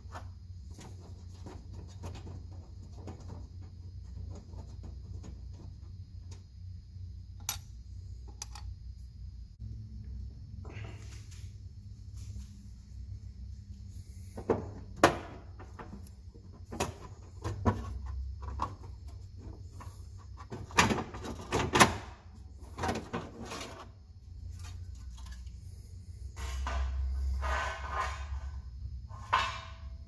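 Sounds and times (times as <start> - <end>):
low steady hum: 0.0 - 21.4
hardware knocks and clunks: 14.3 - 19.0.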